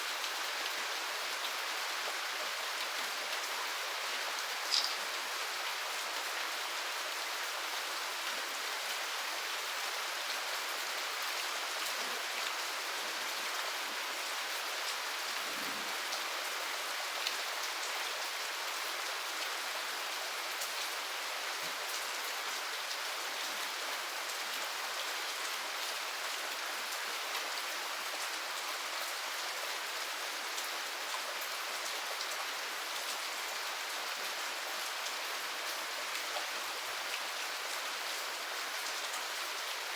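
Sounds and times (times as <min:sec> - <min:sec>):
steady rain hissing: 0:00.0 - 0:39.9
raindrops ticking: 0:04.6 - 0:05.3.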